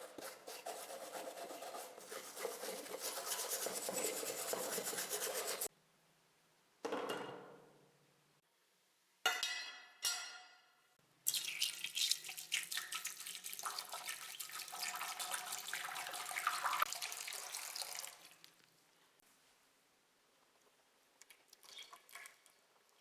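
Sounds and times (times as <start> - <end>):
water running from a tap: 11.3 - 18.5.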